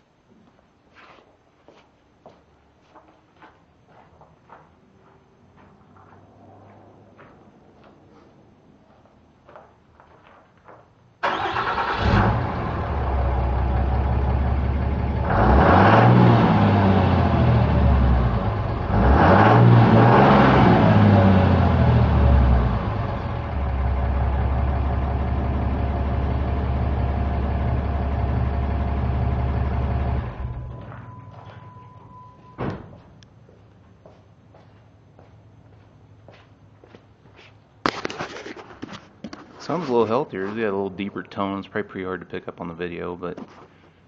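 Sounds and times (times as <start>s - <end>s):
car engine cranking and idling: 11.2s - 31.8s
car engine revving: 11.3s - 24.7s.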